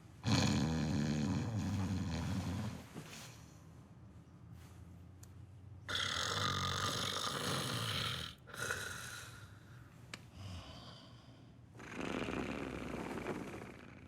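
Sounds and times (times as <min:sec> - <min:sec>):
man snoring loudly: 0:00.2 - 0:02.2, 0:05.9 - 0:09.4, 0:11.8 - 0:14.0.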